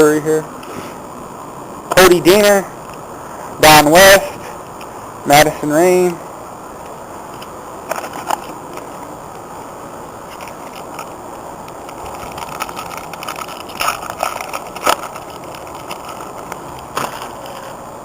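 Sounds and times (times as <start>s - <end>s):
outdoor background hiss: 0.0s - 18.0s
trading cards snapping and rustling: 11.8s - 17.8s.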